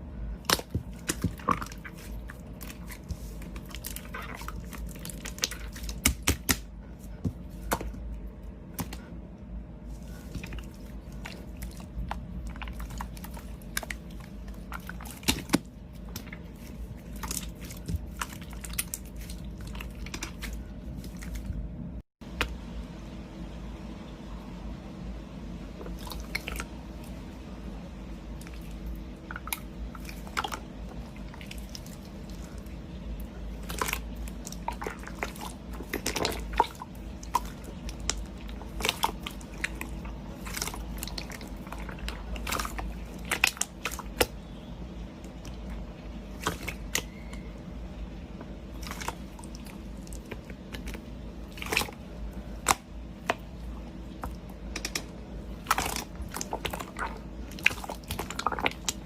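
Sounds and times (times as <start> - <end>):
faint steady hum: 0.0 - 59.0.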